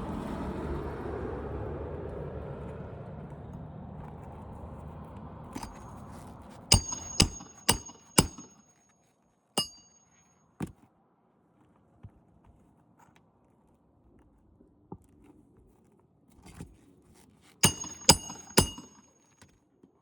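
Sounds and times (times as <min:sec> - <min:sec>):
sharp metallic strikes: 0:06.7 - 0:08.6, 0:09.6 - 0:10.0, 0:17.6 - 0:19.1.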